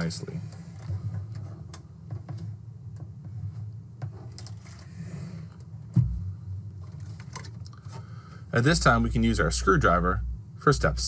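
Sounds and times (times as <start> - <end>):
steady low hum: 0.0 - 11.0
computer case clicks and scrapes: 4.0 - 6.2.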